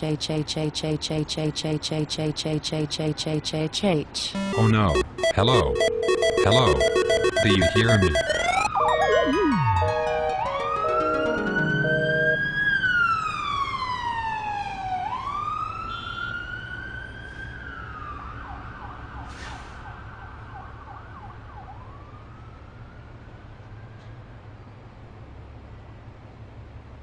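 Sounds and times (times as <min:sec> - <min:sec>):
falling synthetic tone: 0:04.4 - 0:13.0
warning siren wailing: 0:04.4 - 0:15.9.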